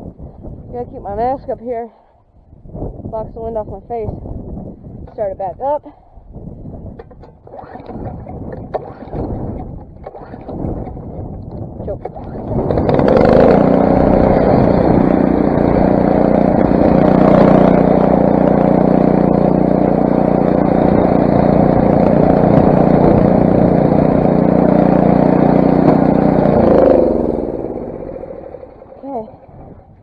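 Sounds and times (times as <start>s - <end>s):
snowblower engine running: 12.0s - 30.0s.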